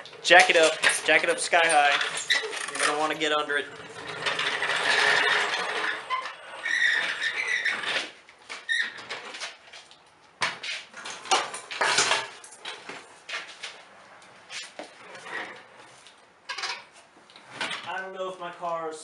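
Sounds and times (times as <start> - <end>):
metal clattering and scraping: 0.0 - 9.8, 10.6 - 13.8.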